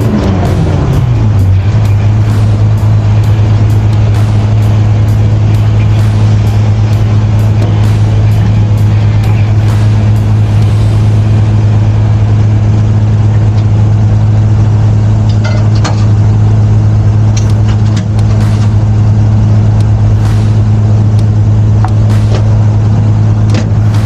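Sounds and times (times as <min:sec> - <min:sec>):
diesel engine humming: 0:00.0 - 0:24.0
sharp clicks and knocks: 0:23.5 - 0:23.7.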